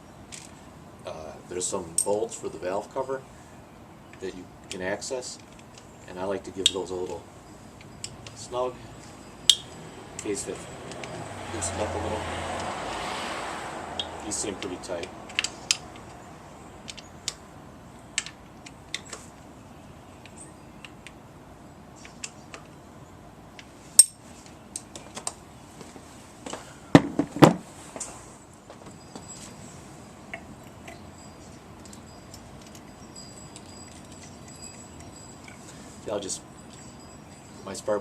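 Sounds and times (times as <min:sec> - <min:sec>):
metal tools clinking: 0:24.0 - 0:24.2, 0:30.3 - 0:38.0.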